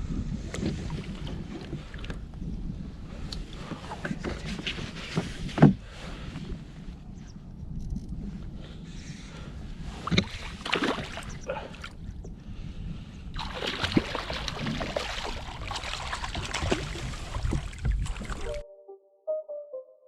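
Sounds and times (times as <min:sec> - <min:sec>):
wind rumble on microphone: 0:00.0 - 0:18.6
water splashing around kayak: 0:00.4 - 0:02.4, 0:09.8 - 0:12.3, 0:13.2 - 0:18.6.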